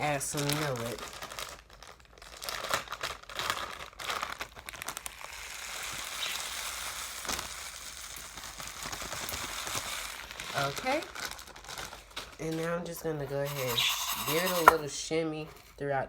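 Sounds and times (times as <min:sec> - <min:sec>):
seeds poured into a bowl: 0:05.2 - 0:11.4, 0:13.1 - 0:14.9.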